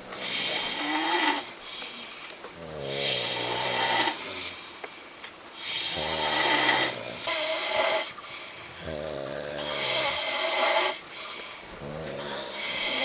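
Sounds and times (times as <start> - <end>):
person snoring: 0.2 - 1.5, 2.6 - 4.6, 5.6 - 8.1, 8.8 - 11.0, 11.8 - 13.0.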